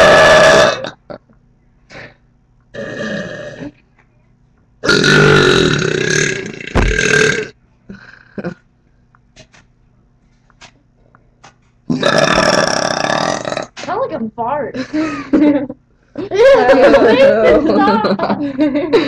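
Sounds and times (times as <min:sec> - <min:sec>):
person burping: 0:00.0 - 0:01.3, 0:02.7 - 0:03.8, 0:04.8 - 0:08.6, 0:11.9 - 0:13.8.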